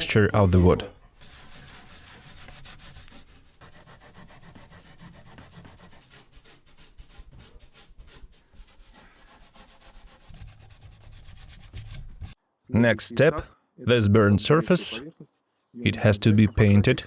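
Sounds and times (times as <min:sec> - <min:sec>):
brush scrubbing wood: 0:01.2 - 0:12.4.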